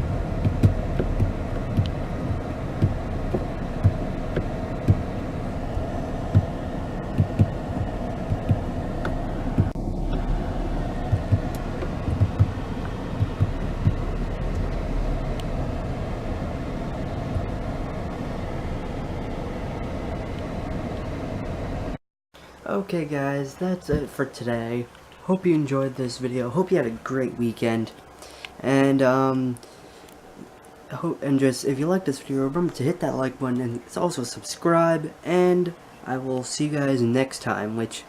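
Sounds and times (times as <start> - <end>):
wind rumble on microphone: 0.0 - 22.0
footsteps thumping softly: 6.3 - 6.5, 7.2 - 8.6, 11.1 - 12.6.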